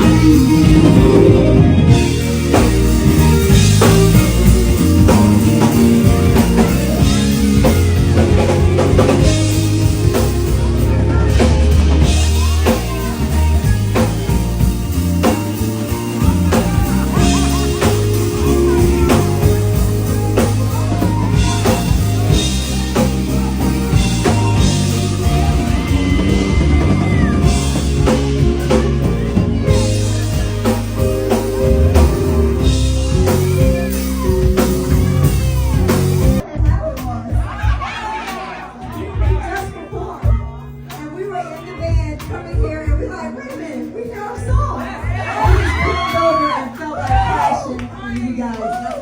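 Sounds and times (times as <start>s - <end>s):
bass line: 0.0s - 37.9s
drum kit beat: 0.0s - 47.5s.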